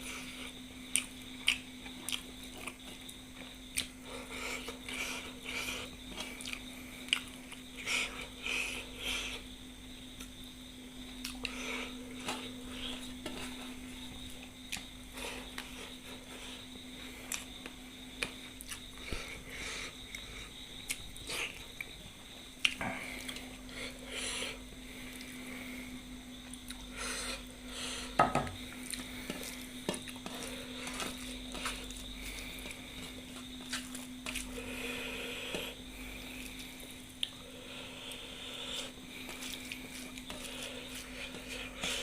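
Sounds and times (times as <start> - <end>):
eating noises: 0.0 - 9.5, 11.1 - 22.0, 22.6 - 42.0
steady low hum: 0.0 - 42.0.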